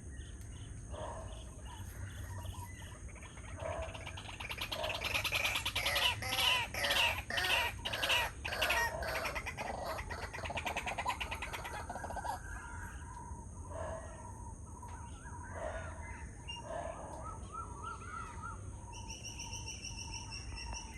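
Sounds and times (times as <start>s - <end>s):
soft bird calls: 0.0s - 20.9s
waterhens chattering: 1.6s - 12.6s.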